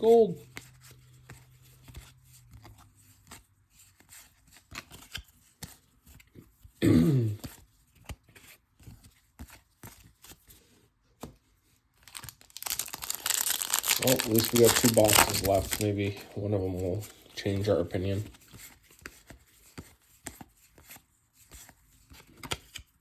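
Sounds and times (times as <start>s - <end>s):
trading cards clicking and rustling: 12.0s - 16.2s.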